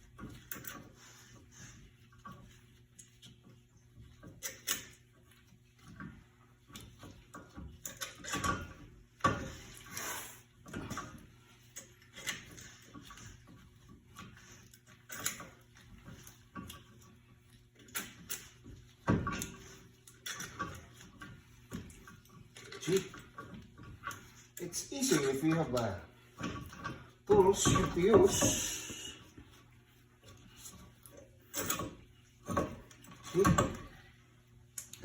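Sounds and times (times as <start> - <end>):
hand tools clanking on metal: 17.9 - 29.2, 31.4 - 34.0.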